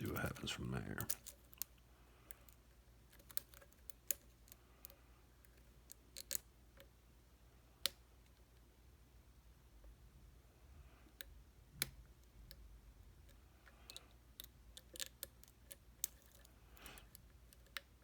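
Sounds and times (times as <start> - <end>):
lock picking clicks and scrapes: 2.4 - 6.5, 13.2 - 17.9.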